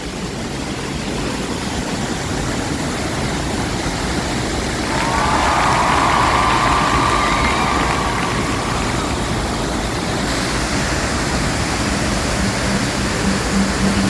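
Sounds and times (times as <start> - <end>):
waterfall rushing: 0.1 - 14.0
faint music: 4.8 - 14.0.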